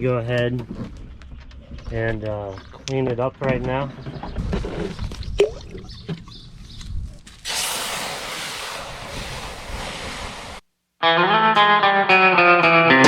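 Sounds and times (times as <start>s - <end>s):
garden hose spraying water: 7.4s - 10.6s.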